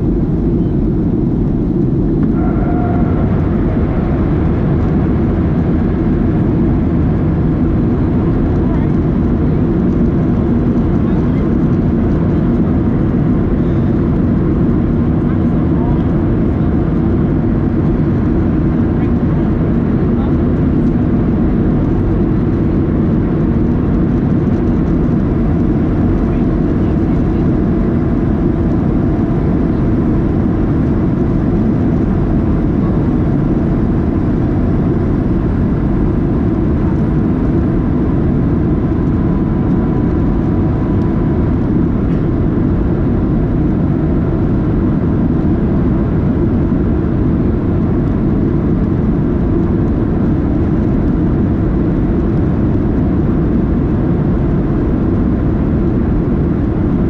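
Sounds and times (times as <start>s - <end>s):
jet engines humming: 0.0s - 57.0s.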